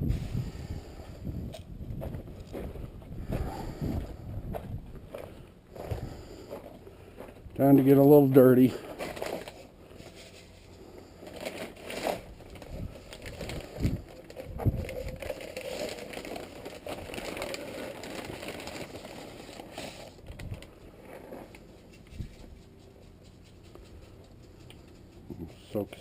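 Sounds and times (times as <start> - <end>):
material rustling and scraping: 8.8 - 24.2.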